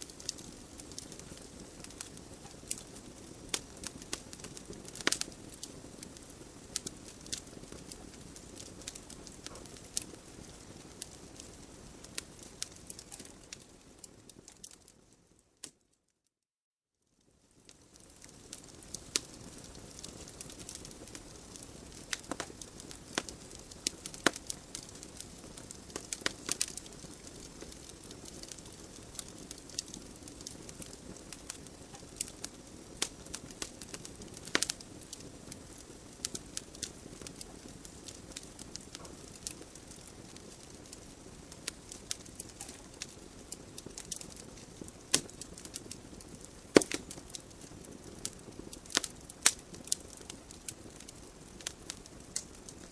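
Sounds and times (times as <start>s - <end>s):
logs crackling and popping: 0.0s - 15.8s, 17.2s - 52.9s
flames hissing: 18.2s - 52.9s.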